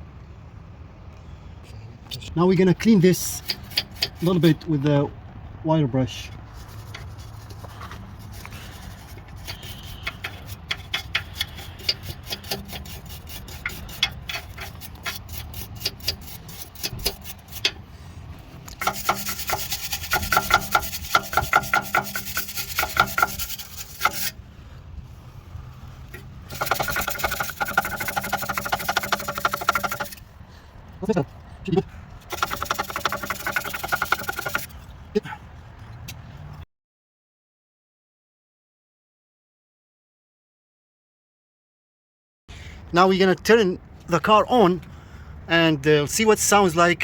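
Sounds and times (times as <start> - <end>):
wire brush scrubbing metal: 3.0 - 4.6, 6.5 - 24.4, 26.1 - 30.2, 32.3 - 34.8.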